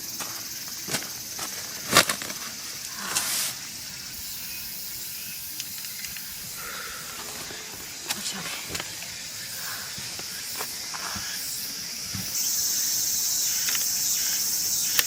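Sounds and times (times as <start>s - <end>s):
insect chorus: 0.0s - 15.0s
short rustle: 1.4s - 3.6s
light clicks of camp gear: 5.5s - 9.1s.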